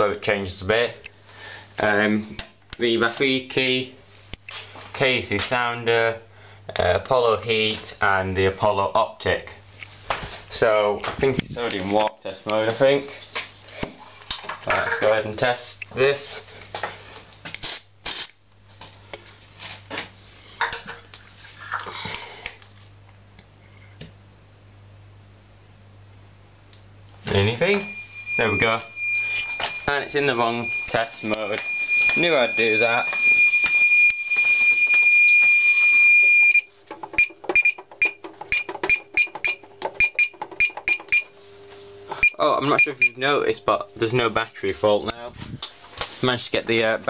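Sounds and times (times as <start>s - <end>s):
steady low hum: 0.0s - 47.0s
fire alarm high-pitched tone: 27.4s - 41.3s, 42.1s - 43.2s
keypad beeps with clicks: 36.2s - 41.3s.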